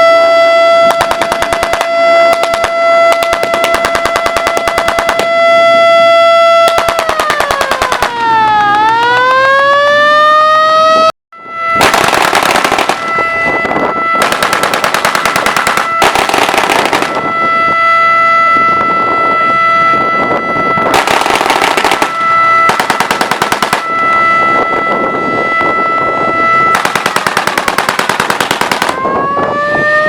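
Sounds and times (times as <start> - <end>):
air-raid siren: 0.0 - 30.0
machine-gun fire: 0.9 - 5.2, 11.8 - 13.0, 14.2 - 17.2, 21.0 - 23.8, 26.8 - 29.0.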